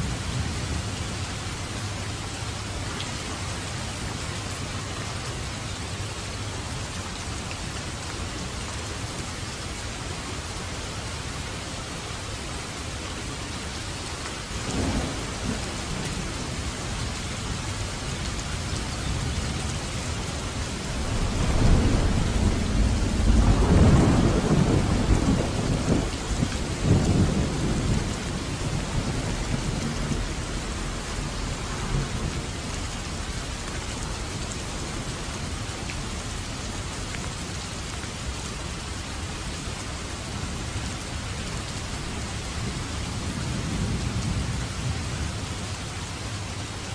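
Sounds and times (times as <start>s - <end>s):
heavy rain falling: 0.0s - 46.9s
rolling thunder: 14.6s - 17.6s, 20.5s - 33.4s.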